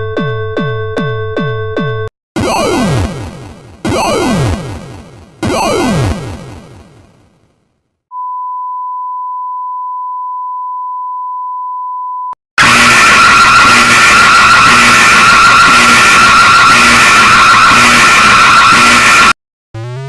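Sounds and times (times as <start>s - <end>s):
harsh noisy screech with wavering tone: 12.6s - 19.4s.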